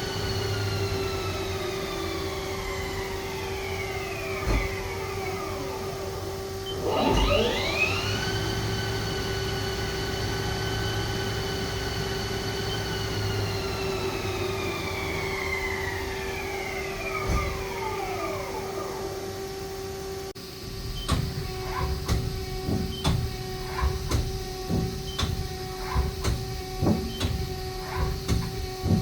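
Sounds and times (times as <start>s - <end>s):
lathe motor whine: 0.0s - 29.0s
steady hum: 0.0s - 29.0s
thump: 21.1s - 29.0s.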